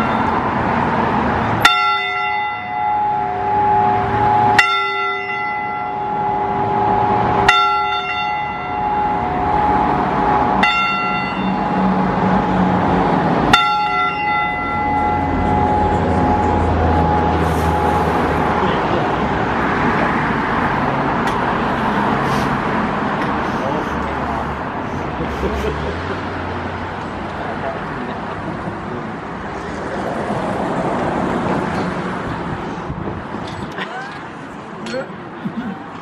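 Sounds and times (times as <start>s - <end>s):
church bell tolling: 0.0s - 0.4s, 1.6s - 11.9s, 13.5s - 17.8s.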